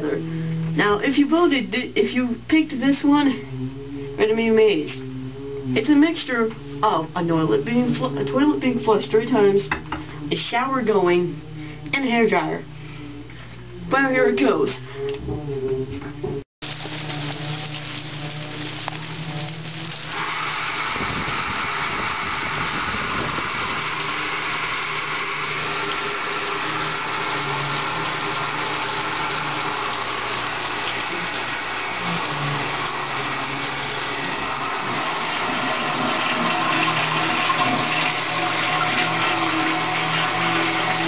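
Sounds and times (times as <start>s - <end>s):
toilet flushing: 5.7s - 10.5s, 16.6s - 41.0s
shower running: 16.6s - 41.0s
hair dryer blowing: 19.8s - 41.0s.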